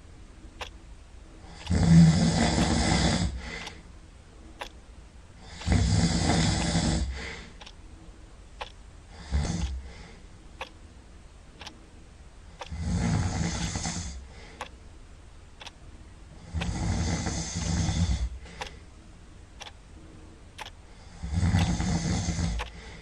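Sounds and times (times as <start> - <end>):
light ticks: 0.6 - 0.8, 2.5 - 2.8, 3.6 - 3.8, 4.6 - 4.8, 5.6 - 5.9, 6.6 - 6.8, 7.6 - 7.8, 8.6 - 8.8, 9.5 - 9.9, 10.6 - 10.8, 11.6 - 11.8, 12.6 - 12.8, 13.6 - 13.9, 14.6 - 14.8, 15.6 - 15.8, 16.6 - 18.8, 19.6 - 19.8, 20.6 - 20.8, 21.4 - 22.8
loud snoring: 1.5 - 3.6, 5.4 - 7.3, 9.2 - 9.8, 12.7 - 14.2, 16.4 - 18.3, 21.1 - 22.7.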